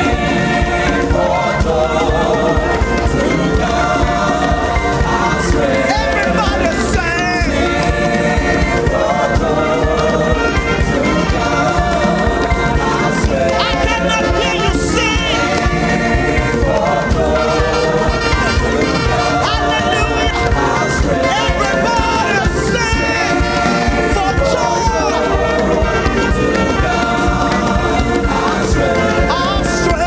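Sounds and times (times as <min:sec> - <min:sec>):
choir singing: 0:00.0 - 0:30.0
gospel worship band music: 0:00.0 - 0:30.0.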